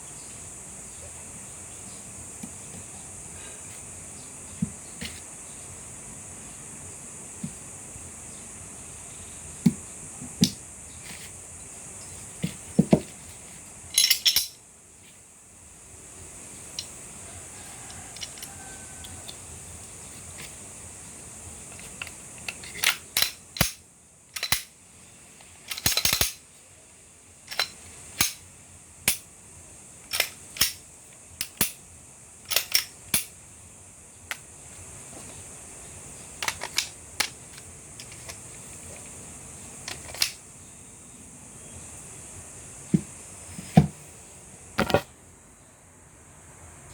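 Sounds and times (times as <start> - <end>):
pistol parts clicking: 21.8 - 23.8, 24.4 - 24.7, 25.7 - 26.4, 27.5 - 28.4, 30.1 - 30.8, 32.5 - 33.3, 36.4 - 38.4, 39.9 - 40.4.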